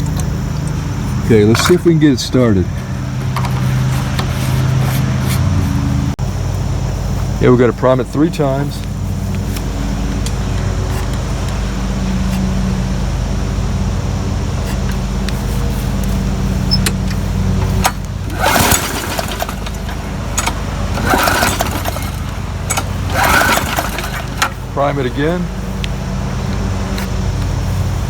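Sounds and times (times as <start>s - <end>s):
mower recoil starter pulled: 0.0s - 6.2s, 14.6s - 25.4s
engine turning over: 0.0s - 28.0s
motor humming: 0.0s - 28.0s.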